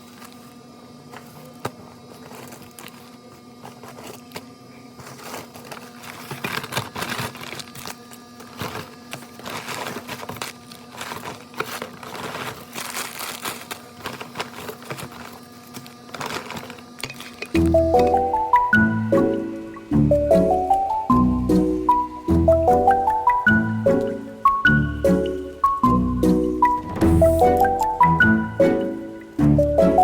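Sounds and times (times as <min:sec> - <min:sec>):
handling rustles and clicks: 0:01.1 - 0:17.8.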